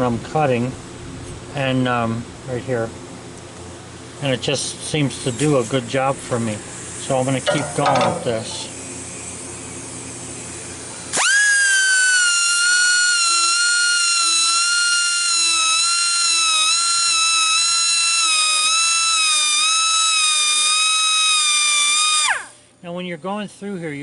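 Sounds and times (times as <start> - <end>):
high-speed rotary tool whine: 9.4 - 22.6.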